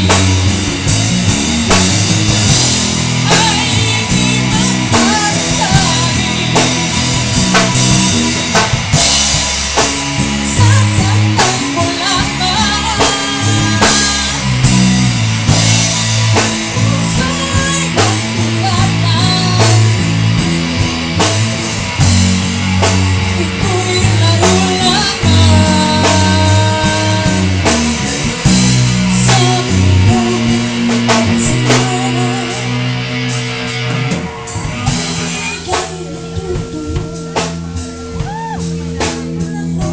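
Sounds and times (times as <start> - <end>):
rock band playing: 0.0 - 39.9
person singing: 3.2 - 8.7, 10.4 - 15.0, 16.6 - 20.0, 23.3 - 33.1, 34.8 - 39.9.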